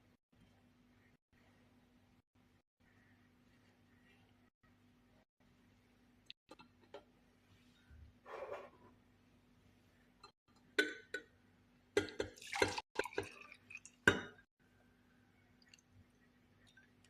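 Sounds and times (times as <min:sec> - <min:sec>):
glassware clinking: 0:12.0 - 0:14.4
liquid dripping: 0:12.0 - 0:14.4, 0:15.5 - 0:17.0.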